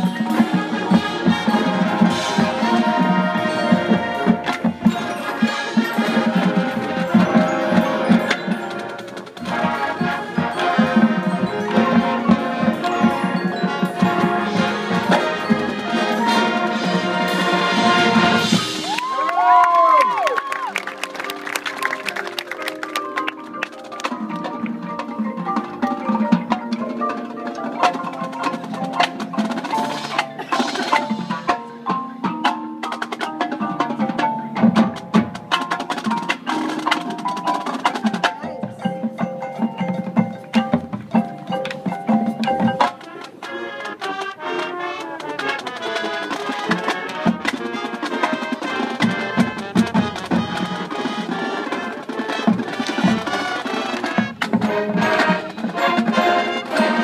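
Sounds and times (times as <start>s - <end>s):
marching band playing: 0.0s - 57.0s
percussion strokes: 0.0s - 57.0s.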